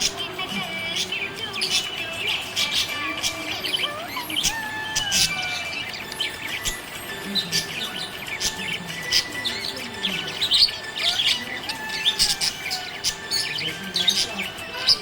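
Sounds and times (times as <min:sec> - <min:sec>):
parrots chirping and chattering: 0:00.0 - 0:15.0.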